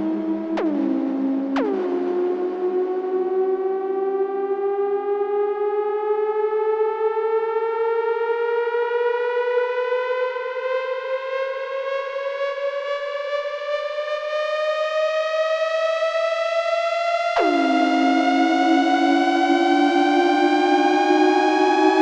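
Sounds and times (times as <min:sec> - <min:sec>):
synthesizer rising tone: 0:17.2 - 0:22.0.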